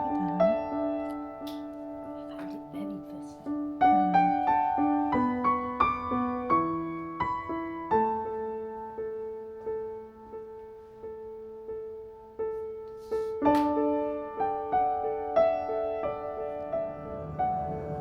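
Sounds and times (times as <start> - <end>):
gentle piano music: 0.0 - 18.0.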